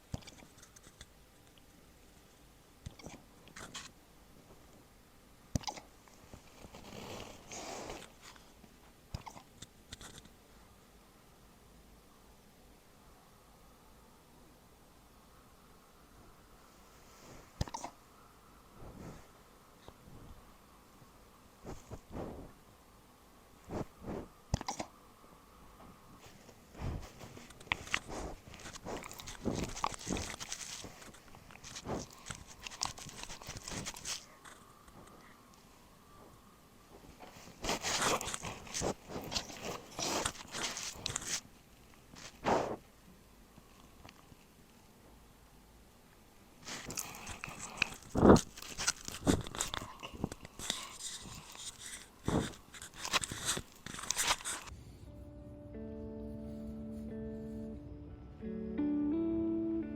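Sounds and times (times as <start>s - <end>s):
puppy chewing on microphone: 0.0s - 1.6s, 2.8s - 3.9s, 5.5s - 6.0s, 9.1s - 10.3s, 17.6s - 18.0s, 23.7s - 24.9s, 26.8s - 35.3s, 37.4s - 41.4s, 46.6s - 54.8s.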